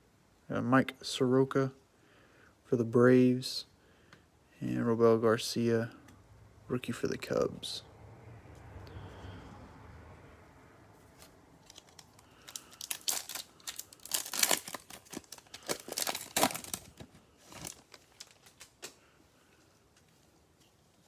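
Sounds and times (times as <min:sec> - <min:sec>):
plastic wrapper crinkling and tearing: 0:11.2 - 0:19.1.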